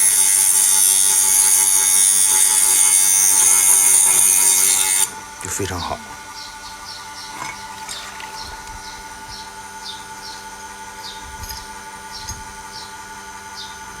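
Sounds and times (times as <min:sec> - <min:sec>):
steady hum: 0:05.0 - 0:12.9
small bird chirping: 0:11.0 - 0:12.9.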